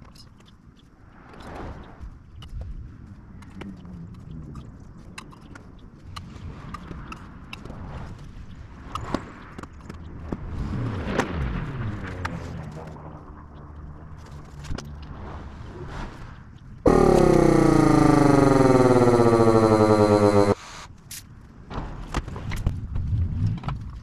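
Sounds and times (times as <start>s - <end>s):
motor running: 16.9s - 20.8s.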